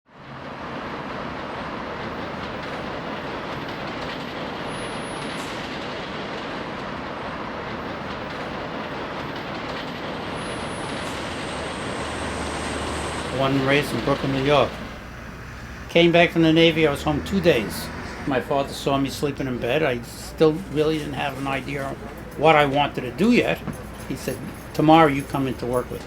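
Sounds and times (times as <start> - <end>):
moving vehicle running noise: 7.9 - 22.4.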